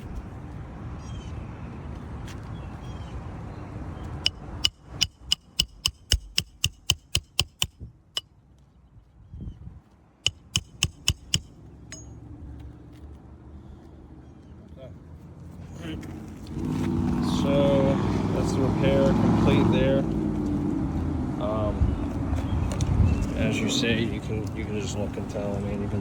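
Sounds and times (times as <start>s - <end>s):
hammer striking nail: 4.2s - 7.8s, 10.3s - 12.1s.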